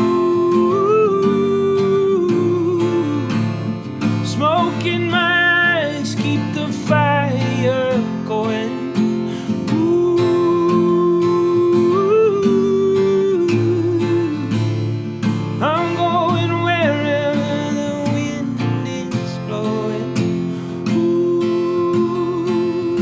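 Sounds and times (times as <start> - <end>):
person singing wordlessly: 0.0 - 3.5, 4.1 - 14.9, 15.6 - 23.0
strummed acoustic guitar: 0.0 - 23.0.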